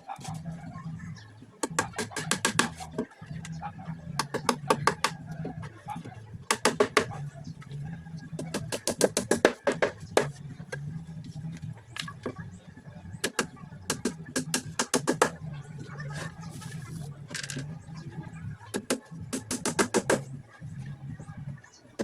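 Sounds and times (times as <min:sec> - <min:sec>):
background music with low bass: 0:00.0 - 0:22.0.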